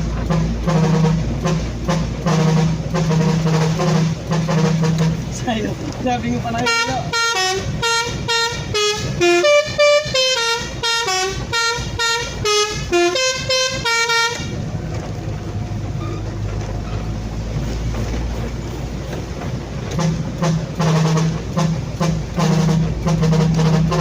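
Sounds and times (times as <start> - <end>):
musical vehicle horn tune: 0.0 - 5.4, 6.5 - 14.7, 19.8 - 24.0
vehicle engine and road noise: 0.0 - 24.0.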